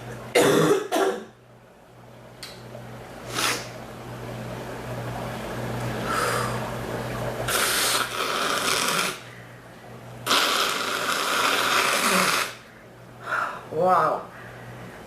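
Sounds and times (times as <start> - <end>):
woman coughing raspily: 0.3 - 1.4.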